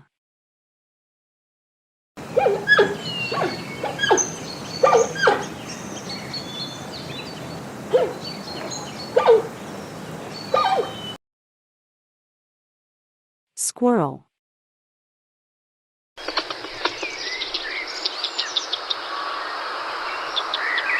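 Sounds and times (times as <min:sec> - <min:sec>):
birds chirping: 0:02.2 - 0:11.2, 0:16.2 - 0:20.9
panda calling: 0:02.4 - 0:05.5, 0:10.6 - 0:11.0.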